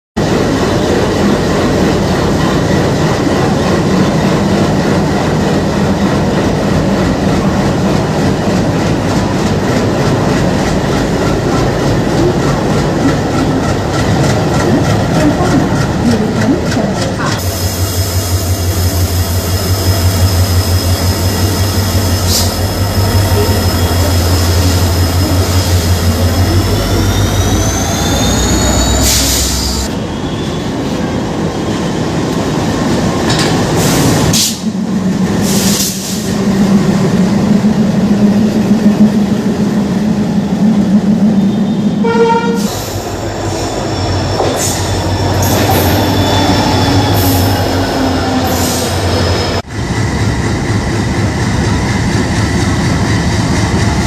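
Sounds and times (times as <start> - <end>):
diesel locomotive engine beat: 0.2 - 54.0
rising engine whine: 18.3 - 30.6.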